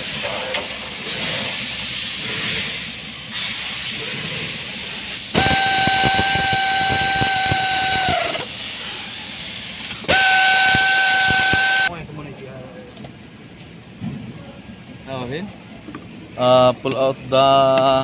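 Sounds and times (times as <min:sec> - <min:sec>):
air hissing with whistle: 0:01.2 - 0:12.0.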